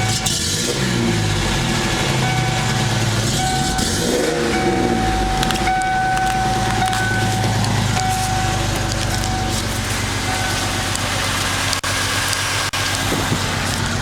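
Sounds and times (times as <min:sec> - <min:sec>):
car engine misfiring and revving: 0:00.0 - 0:14.0
high whine: 0:01.8 - 0:13.7.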